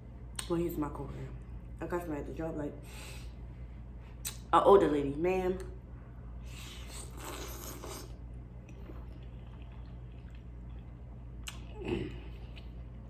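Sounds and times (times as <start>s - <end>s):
low hum: 0.0s - 13.0s
person chewing: 6.5s - 12.8s.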